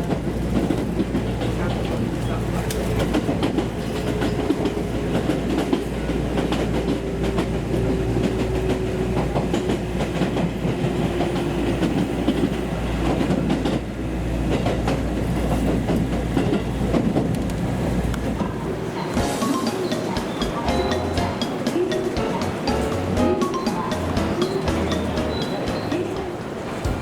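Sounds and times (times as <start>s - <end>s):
low train rumble: 0.0s - 27.0s
train wheels clacking over rail joints: 14.5s - 27.0s.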